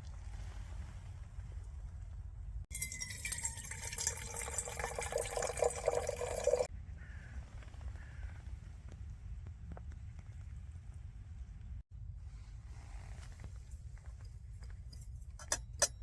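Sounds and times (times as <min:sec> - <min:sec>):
low steady background rumble: 0:00.0 - 0:16.0
liquid pouring into container: 0:02.7 - 0:06.7.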